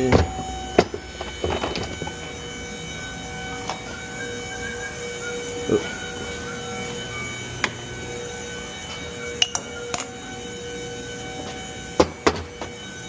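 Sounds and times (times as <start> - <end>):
steady background hum: 0.0 - 13.0
tools clicking and knocking: 9.4 - 10.1.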